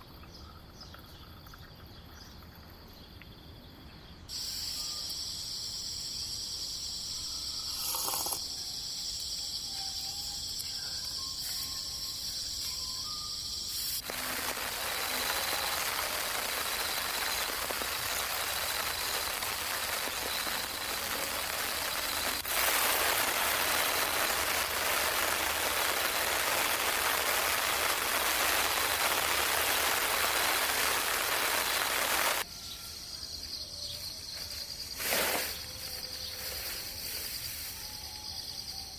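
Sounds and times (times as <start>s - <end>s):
insects trilling: 0.0s - 38.9s
rain falling: 14.0s - 32.4s.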